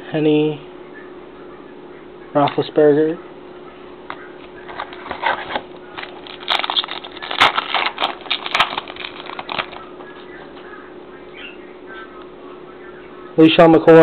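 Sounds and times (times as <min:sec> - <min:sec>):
cards rustling: 0:04.4 - 0:10.6.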